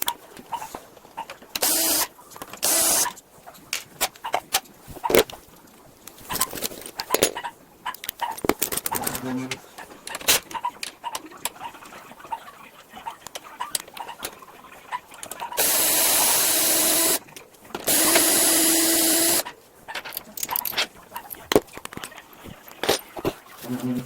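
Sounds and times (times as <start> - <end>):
power drill running: 1.6 - 3.2, 15.6 - 17.2, 17.9 - 19.4
handling clicks and knocks: 6.1 - 7.4, 8.0 - 11.0.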